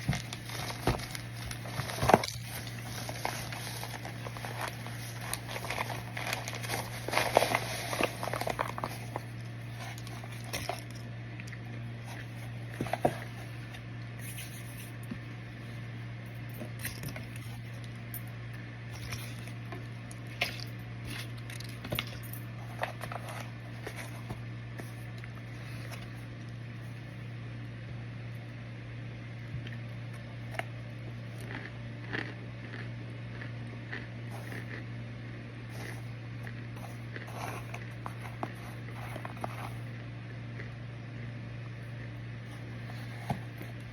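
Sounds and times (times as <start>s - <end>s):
cornstarch crunching and crackling: 0.0s - 15.2s, 30.4s - 34.9s, 35.6s - 40.7s
steady low hum: 0.0s - 43.9s.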